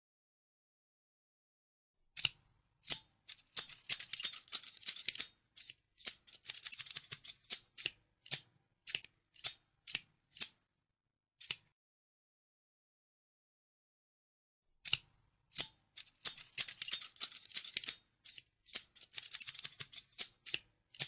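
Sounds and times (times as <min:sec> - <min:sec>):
scissors snipping: 0:02.2 - 0:10.6, 0:11.4 - 0:11.7, 0:14.8 - 0:21.0.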